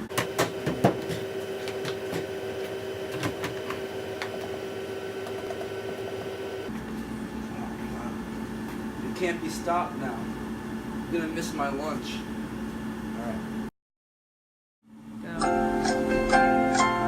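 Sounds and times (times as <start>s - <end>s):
washing machine humming: 0.0s - 13.7s.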